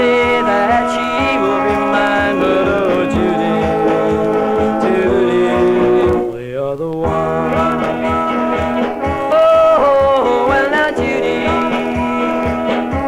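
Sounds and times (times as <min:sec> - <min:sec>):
rock and roll song: 0:00.0 - 0:13.0.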